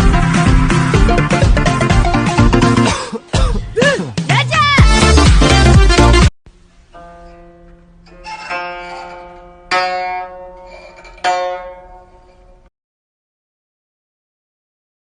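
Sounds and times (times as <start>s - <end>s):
plucked string chords: 0.0s - 3.5s, 4.8s - 12.7s.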